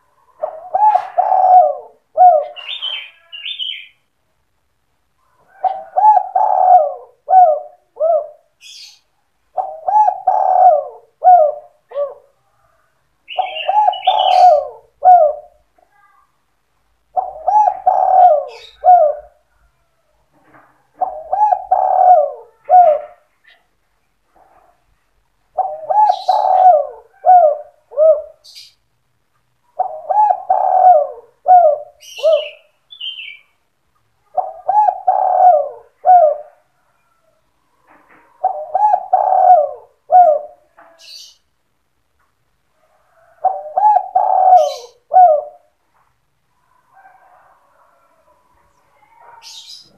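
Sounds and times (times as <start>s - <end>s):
dove cooing: 0.0s - 3.9s, 5.3s - 8.9s, 9.5s - 15.7s, 17.0s - 19.7s, 20.5s - 23.7s, 25.5s - 28.7s, 29.7s - 33.4s, 34.2s - 41.4s, 42.8s - 45.8s, 46.6s - 48.4s.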